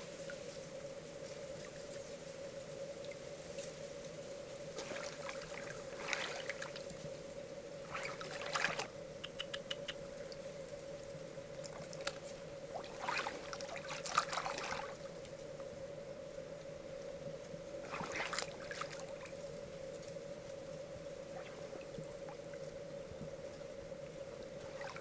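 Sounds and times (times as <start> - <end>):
faint steady hum: 0.0 - 25.0
water splashing and trickling: 4.8 - 7.0, 7.9 - 8.9, 11.6 - 15.2, 17.8 - 19.4
small sharp clicks: 9.2 - 10.0.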